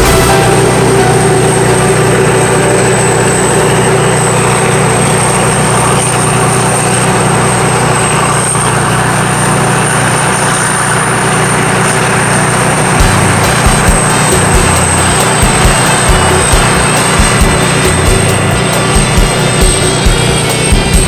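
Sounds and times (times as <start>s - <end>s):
combine harvester engine hum: 0.0s - 21.0s
high-pitched whine: 0.0s - 21.0s.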